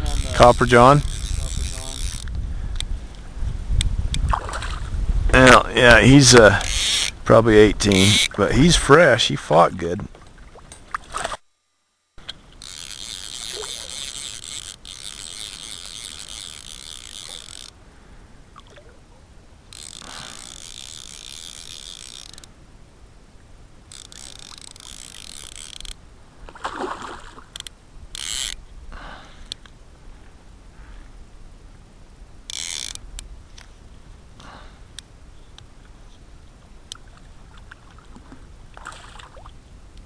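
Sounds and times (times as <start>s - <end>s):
fly reel drag buzzing: 0.0s - 17.8s, 18.5s - 22.6s, 23.8s - 28.7s, 32.4s - 33.9s.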